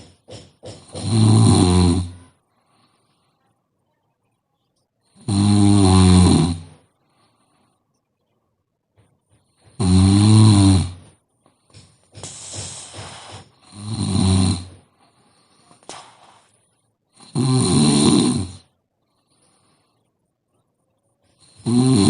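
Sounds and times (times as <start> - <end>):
woman snoring: 0.8 - 2.4, 5.2 - 6.8, 9.7 - 11.2, 12.2 - 14.9, 17.1 - 18.7, 21.4 - 22.0
breathy exhale: 11.7 - 13.6.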